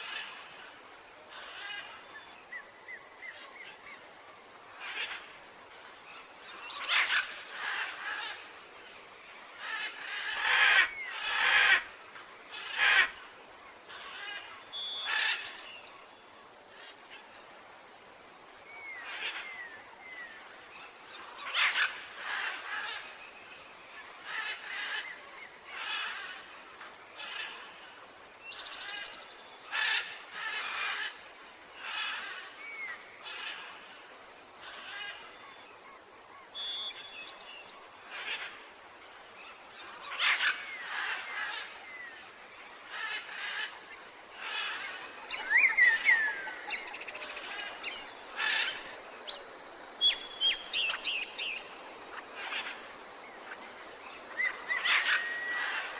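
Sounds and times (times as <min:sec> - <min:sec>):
chorus of pulsing animal calls: 0:09.6 - 0:13.2, 0:21.0 - 0:23.2, 0:24.0 - 0:26.6, 0:28.6 - 0:34.0, 0:34.6 - 0:35.5, 0:39.4 - 0:55.9
birds chirping and whistling: 0:45.3 - 0:47.2.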